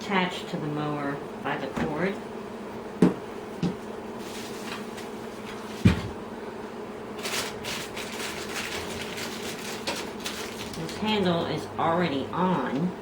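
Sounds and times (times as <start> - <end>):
steady buzzing hum: 0.0 - 13.0
cardboard rustle: 7.2 - 11.0.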